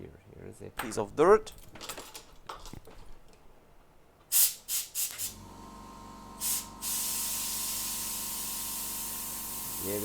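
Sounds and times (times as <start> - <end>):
air puffs and hiss: 4.3 - 5.4, 6.4 - 10.0.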